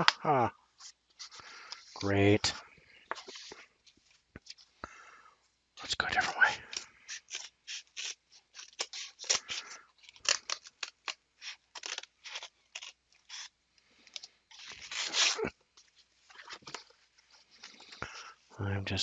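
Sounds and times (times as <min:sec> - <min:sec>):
package being cut: 0:06.6 - 0:13.6, 0:14.5 - 0:15.5
package tearing: 0:06.6 - 0:15.6, 0:16.3 - 0:17.0.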